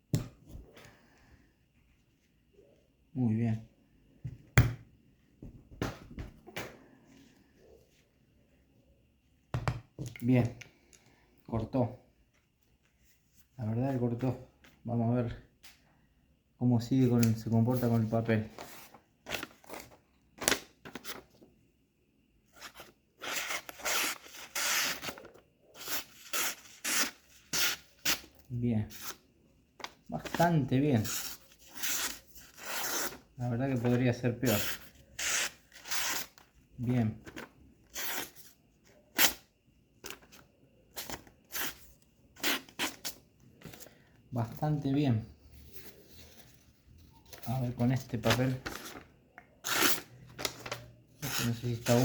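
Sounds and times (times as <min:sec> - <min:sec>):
knife slicing paper: 0:22.6 - 0:25.2, 0:25.8 - 0:28.2.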